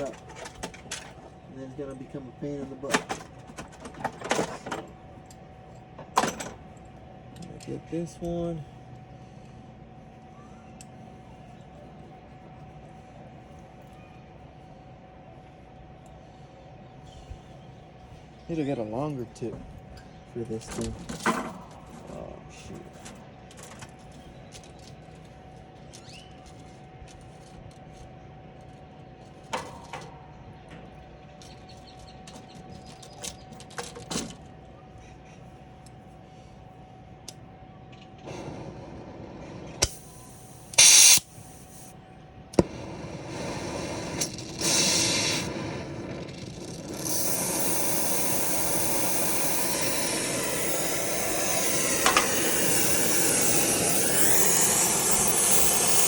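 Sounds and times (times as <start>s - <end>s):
gas hissing bursts: 38.2s - 41.9s, 42.6s - 56.0s
torch flame hissing: 38.2s - 41.9s, 42.6s - 56.0s.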